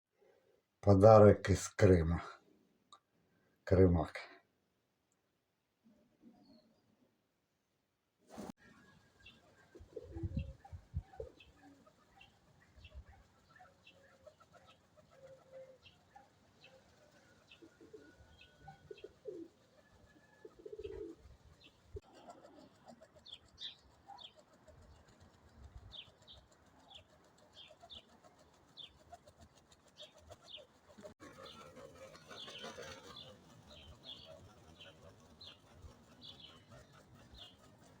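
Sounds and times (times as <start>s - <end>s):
wings flapping: 8.3s - 38.0s
pigeons cooing: 8.4s - 25.0s, 26.8s - 38.0s.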